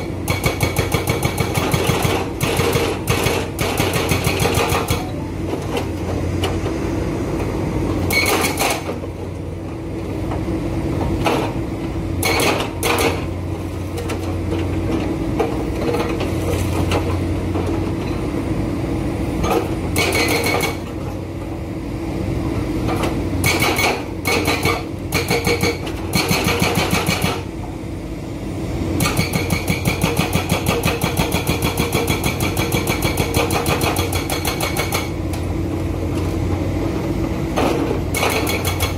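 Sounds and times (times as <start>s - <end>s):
excavator engine running: 0.0s - 38.9s
hydraulic breaker hammering: 0.2s - 5.1s, 12.2s - 13.3s, 20.0s - 20.9s, 23.4s - 27.5s, 29.0s - 35.2s, 37.7s - 38.9s.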